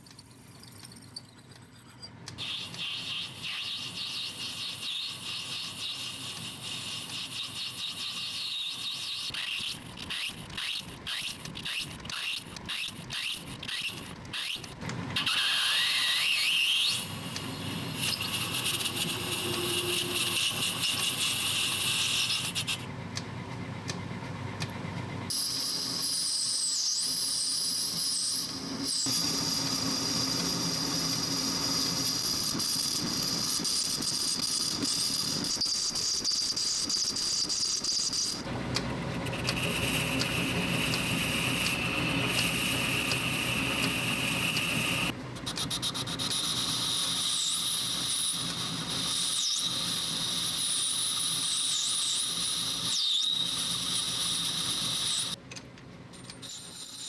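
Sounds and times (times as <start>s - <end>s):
power tool squealing on brass: 18.0s - 22.5s, 39.2s - 45.1s, 46.5s - 55.4s.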